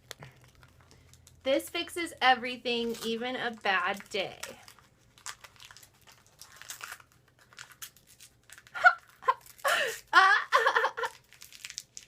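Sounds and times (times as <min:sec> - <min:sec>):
wrapping paper tearing and crinkling: 0:00.0 - 0:12.0
woman's voice: 0:01.5 - 0:04.6.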